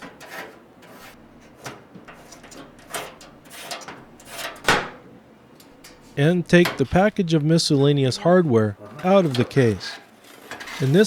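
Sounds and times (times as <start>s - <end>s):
computer case cover scraping: 9.0s - 11.0s.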